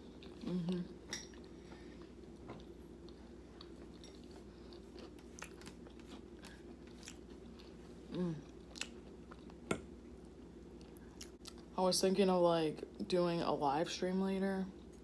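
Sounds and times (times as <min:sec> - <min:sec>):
person chewing: 0:00.0 - 0:11.6
steady low hum: 0:00.0 - 0:15.0.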